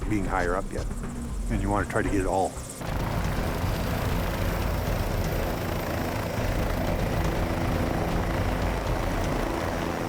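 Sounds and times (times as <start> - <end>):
large engine droning: 2.7 - 10.0.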